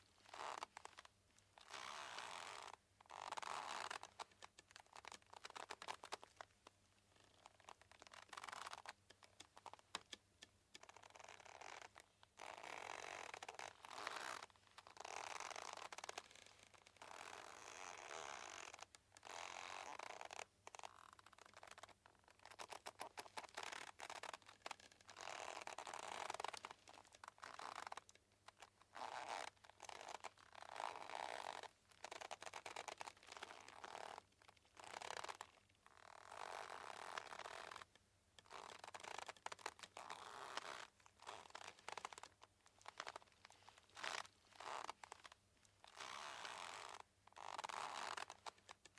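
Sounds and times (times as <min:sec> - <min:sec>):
rope creaking under strain: 0:00.3 - 0:06.5, 0:07.2 - 0:48.9
small clicks: 0:07.5 - 0:12.0.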